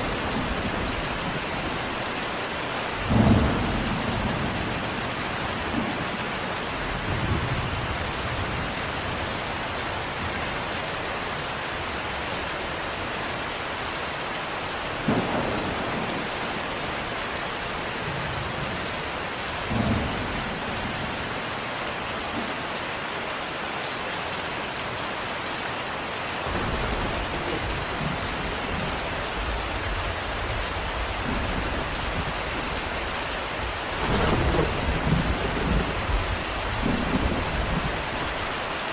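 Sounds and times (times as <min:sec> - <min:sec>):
steady rain hissing: 0:00.0 - 0:38.9
distant thunder rumble: 0:02.9 - 0:08.7, 0:15.0 - 0:21.6, 0:26.4 - 0:38.6.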